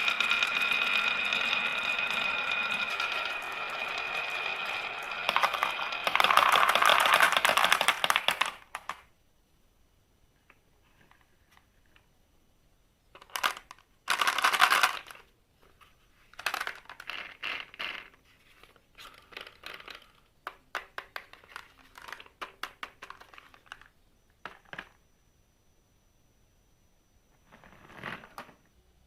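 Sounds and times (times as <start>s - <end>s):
marbles rolling down wooden run: 0.0s - 9.0s, 13.3s - 15.2s, 16.4s - 18.2s, 19.0s - 23.9s.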